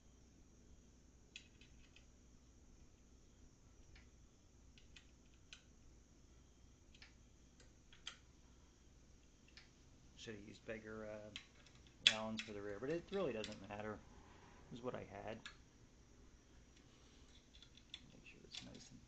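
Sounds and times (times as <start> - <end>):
allen key clicking on screws: 11.3 - 13.8, 17.3 - 18.9.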